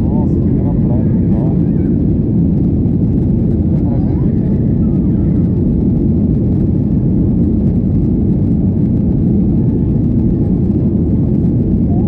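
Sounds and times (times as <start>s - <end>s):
jet engine rumble: 0.0s - 12.0s.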